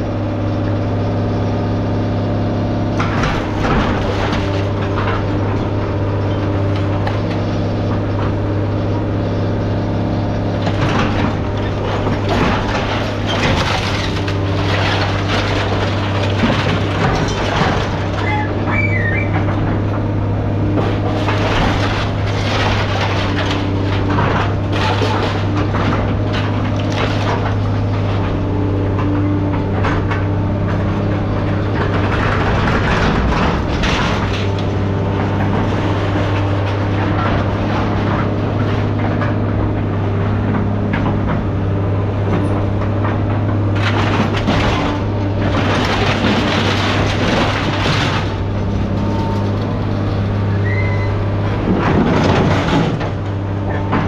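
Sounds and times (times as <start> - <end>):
machine engine droning: 0.0 - 54.0
metal clanks and rattles: 10.5 - 20.1, 20.7 - 50.5.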